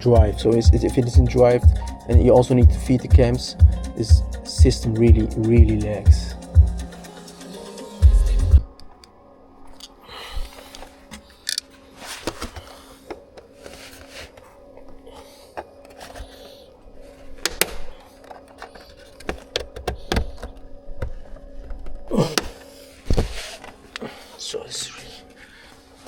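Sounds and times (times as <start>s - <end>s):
steady low hum: 0.0s - 26.0s
plastic trim clicking and thunking: 17.4s - 23.3s.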